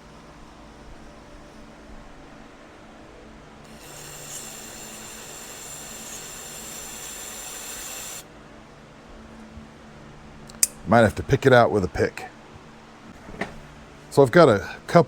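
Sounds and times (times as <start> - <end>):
pressurized spray hissing: 3.7 - 8.2
steady high whistle: 3.7 - 8.3.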